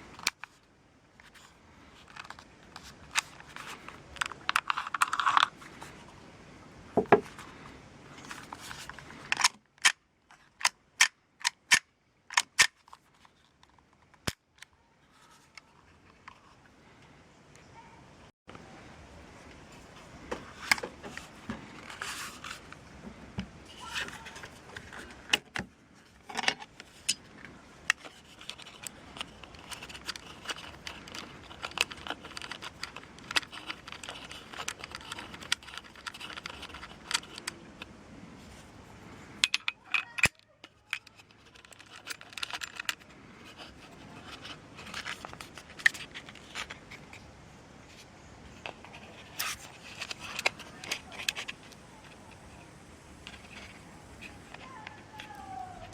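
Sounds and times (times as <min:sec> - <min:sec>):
metal pistol parts clicking and rattling: 0:00.1 - 0:00.6, 0:01.3 - 0:05.5, 0:08.3 - 0:16.4, 0:26.2 - 0:37.9, 0:39.4 - 0:47.2, 0:48.9 - 0:52.2.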